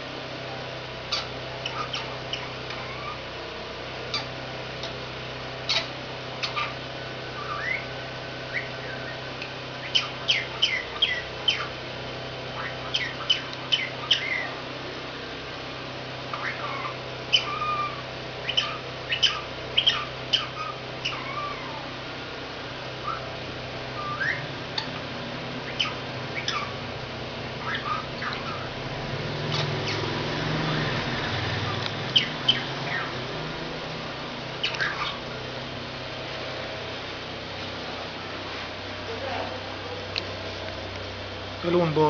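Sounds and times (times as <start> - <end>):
parrot chirping and whistling: 1.1 - 3.2, 5.7 - 11.8, 12.5 - 14.6, 16.3 - 21.8, 23.0 - 23.3, 24.0 - 25.0, 25.6 - 26.8, 27.6 - 28.7, 32.1 - 33.2, 34.6 - 35.2.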